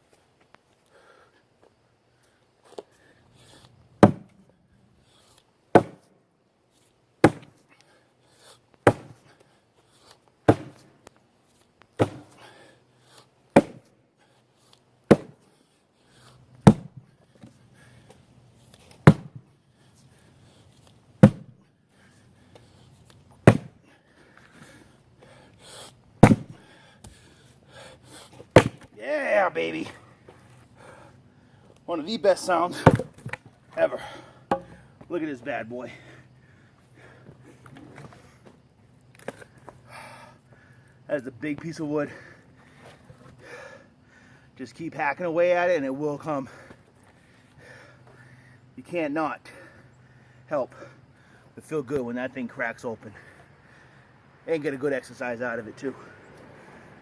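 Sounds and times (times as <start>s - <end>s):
axe chopping wood: 4.0s - 4.4s, 5.7s - 6.1s, 7.2s - 7.6s, 8.8s - 9.2s, 10.5s - 10.9s, 12.0s - 12.4s, 13.5s - 13.9s, 15.1s - 15.5s, 16.6s - 17.0s, 19.0s - 19.5s, 21.2s - 21.6s, 23.4s - 23.8s, 26.2s - 27.2s, 28.5s - 29.0s, 32.8s - 33.4s, 34.5s - 34.8s.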